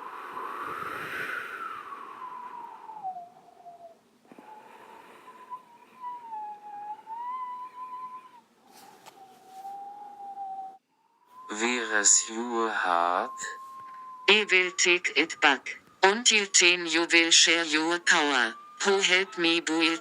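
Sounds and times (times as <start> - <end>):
hiss: 0.0 - 2.4
high wavering tone: 5.4 - 20.0.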